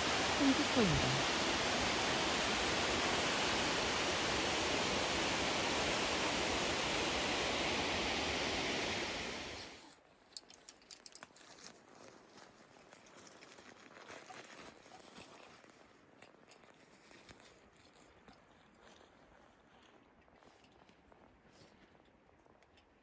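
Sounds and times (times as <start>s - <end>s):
waterfall roaring: 0.0s - 9.8s.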